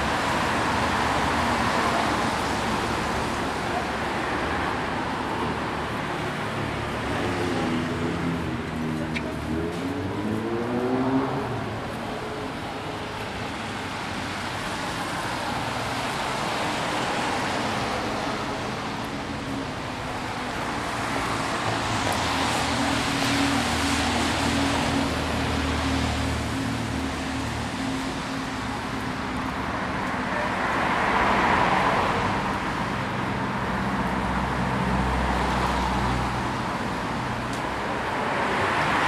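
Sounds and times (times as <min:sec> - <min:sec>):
passing cars: 0:00.0 - 0:39.0
vehicle engine pulling away: 0:07.3 - 0:11.9.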